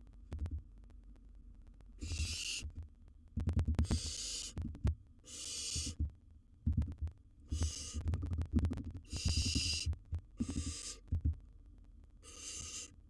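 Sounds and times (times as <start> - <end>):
owl chicks hissing: 2.0 - 2.7, 3.8 - 4.6, 5.2 - 6.0, 7.5 - 8.1, 9.0 - 11.1, 12.2 - 13.0.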